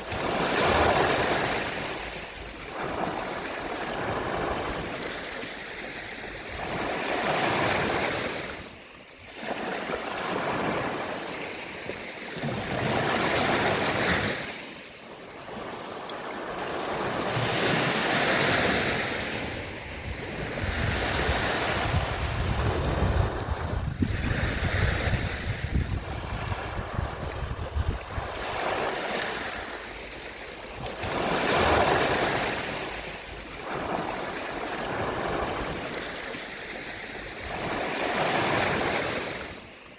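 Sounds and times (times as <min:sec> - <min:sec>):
small waves washing onto shore: 0:00.0 - 0:39.9
wind rumble on microphone: 0:16.7 - 0:36.4.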